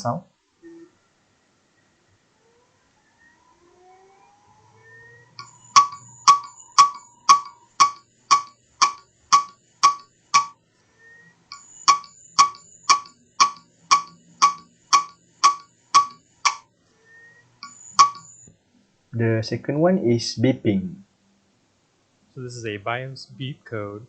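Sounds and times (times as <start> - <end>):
faint rising whine: 1.8 - 8.2, 10.8 - 12.8, 16.9 - 18.5
hard disk drive clicking: 5.4 - 10.5, 11.5 - 16.6, 17.6 - 18.3.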